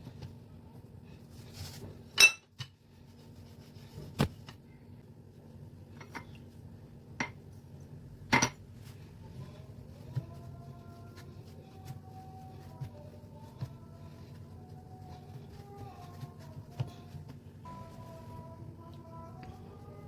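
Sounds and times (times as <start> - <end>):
utensils clinking against dishes: 2.2 - 2.6.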